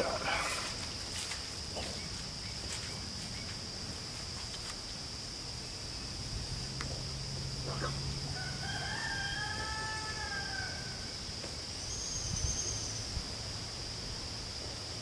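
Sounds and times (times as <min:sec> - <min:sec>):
insects droning: 0:00.0 - 0:15.0
rooster crowing: 0:08.3 - 0:11.2.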